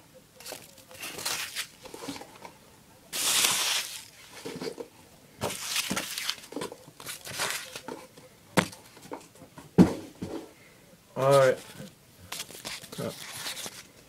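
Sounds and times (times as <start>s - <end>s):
packing material crinkling: 0.4s - 2.3s, 3.1s - 4.6s, 5.4s - 7.9s, 12.3s - 14.0s.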